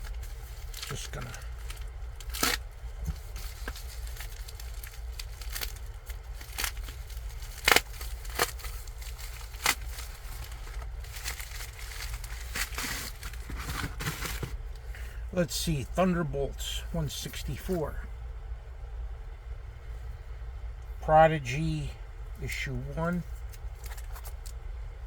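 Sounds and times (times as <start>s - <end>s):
cardboard box crackling: 0.0s - 14.6s
packing rustling: 0.0s - 14.6s
steady low hum: 0.0s - 25.0s.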